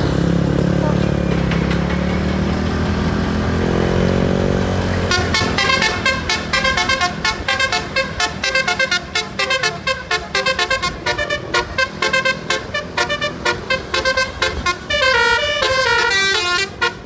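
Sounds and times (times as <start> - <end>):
bus engine running: 0.0 - 17.0
musical air horn melody: 5.1 - 17.0.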